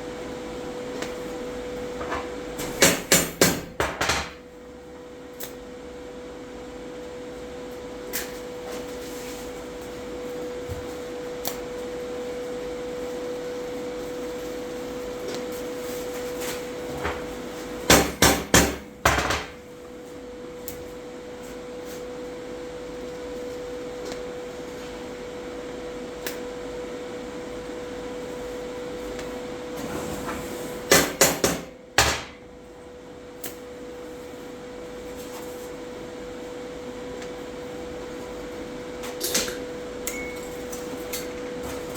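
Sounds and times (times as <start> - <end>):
steady electrical hum: 0.0 - 41.9.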